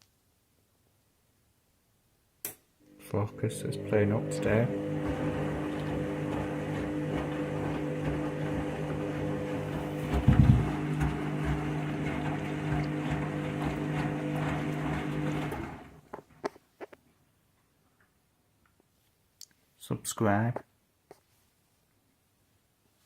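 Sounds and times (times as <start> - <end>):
washing machine spinning: 2.9 - 16.1
heavy low thudding: 9.8 - 10.8.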